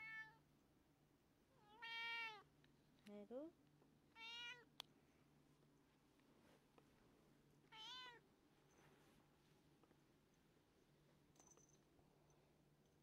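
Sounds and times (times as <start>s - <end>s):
cat meowing: 1.6s - 2.5s, 4.2s - 4.7s, 7.7s - 8.2s.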